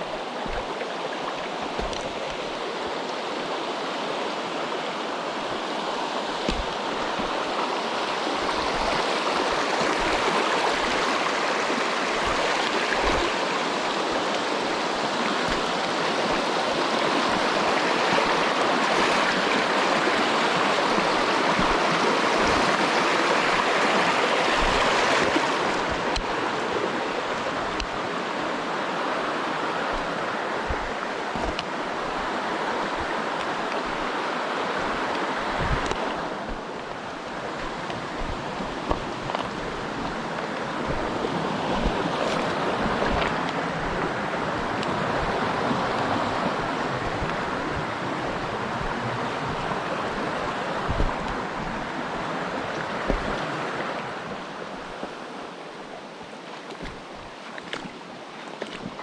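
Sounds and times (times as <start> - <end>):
stream rushing over rocks: 0.0 - 59.0.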